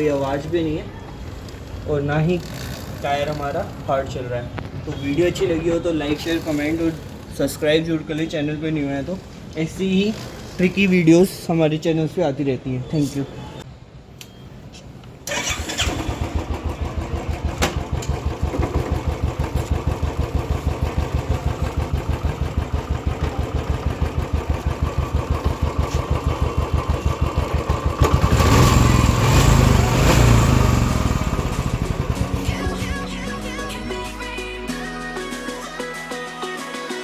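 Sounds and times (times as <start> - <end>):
motorcycle engine starting and idling: 15.2 - 33.4
engine revving: 27.7 - 33.0.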